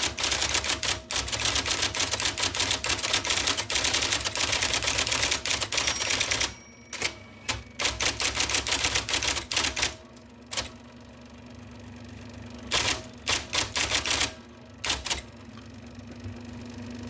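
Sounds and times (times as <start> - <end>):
electric typewriter typing: 0.0 - 10.8, 12.7 - 15.3.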